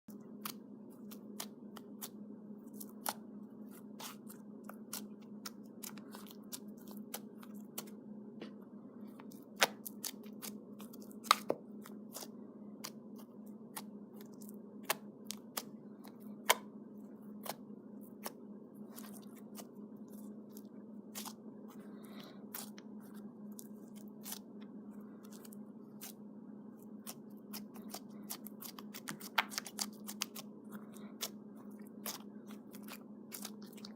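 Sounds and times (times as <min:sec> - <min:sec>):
steady low hum: 0:00.1 - 0:33.9
slime clicking and crackling: 0:09.4 - 0:16.7, 0:26.8 - 0:33.9.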